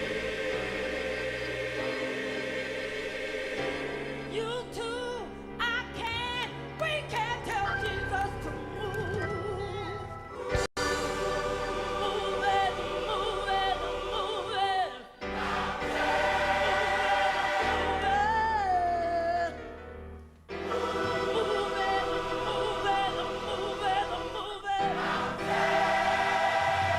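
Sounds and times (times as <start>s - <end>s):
gospel choir singing: 0.0s - 5.3s, 10.2s - 19.6s, 20.5s - 26.9s.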